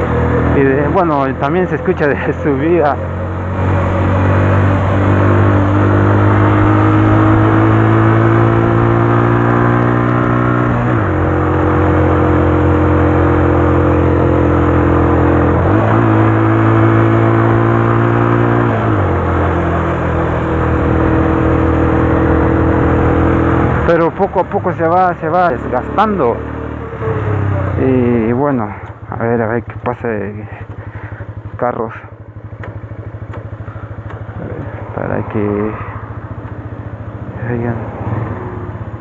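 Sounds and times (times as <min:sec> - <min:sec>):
motorcycle engine while riding: 0:00.0 - 0:39.0
road and wind noise: 0:00.0 - 0:39.0.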